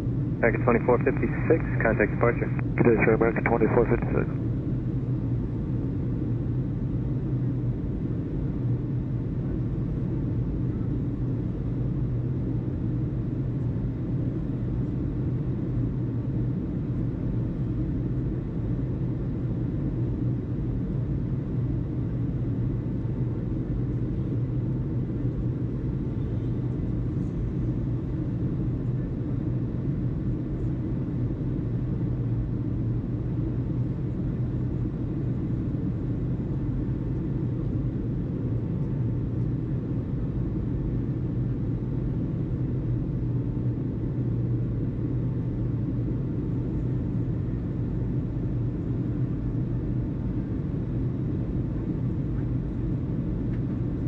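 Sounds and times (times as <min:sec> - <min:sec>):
steady low rumble: 0:00.0 - 0:08.8.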